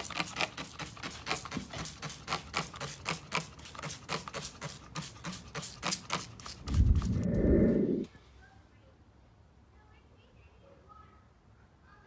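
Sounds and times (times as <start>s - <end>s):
scrubbing strokes: 0.0s - 8.1s.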